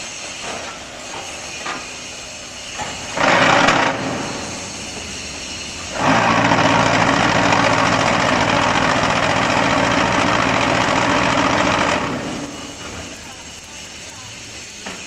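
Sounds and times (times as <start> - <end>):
vibration table hum and rattle: 2.8 - 13.5.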